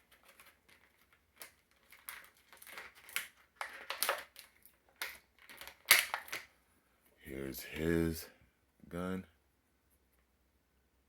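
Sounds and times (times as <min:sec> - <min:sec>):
plastic packaging crinkling: 0:00.0 - 0:06.5.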